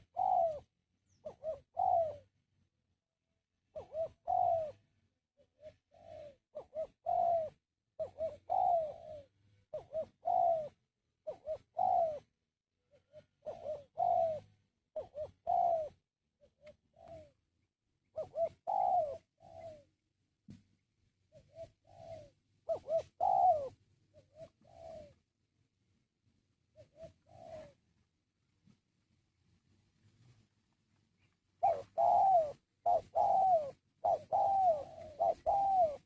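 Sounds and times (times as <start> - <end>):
dove cooing: 0.0 - 2.4, 3.7 - 17.5, 18.1 - 20.0, 21.3 - 25.3, 26.7 - 27.9, 31.2 - 36.0.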